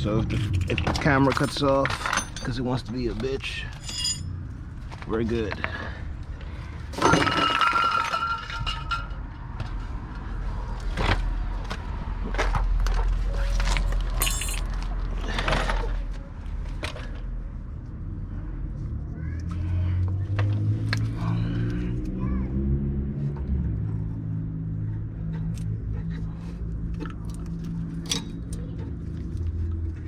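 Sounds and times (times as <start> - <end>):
metal tools clinking: 1.0 - 4.4, 13.6 - 14.8.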